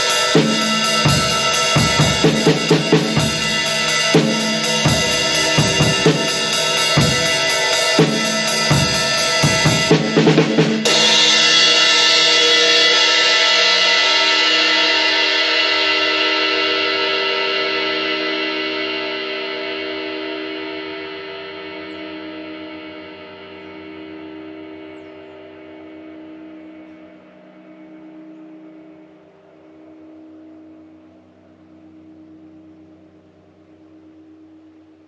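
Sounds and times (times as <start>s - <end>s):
bass drum and snare: 0.0s - 12.2s
drum fill: 0.0s - 14.2s
ride cymbal pattern: 0.0s - 17.0s
loud cymbal crash ringing: 0.0s - 29.9s.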